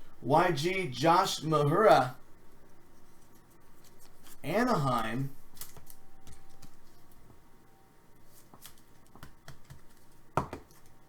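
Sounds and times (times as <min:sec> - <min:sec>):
cards rustling: 0:02.5 - 0:07.3, 0:08.2 - 0:11.0.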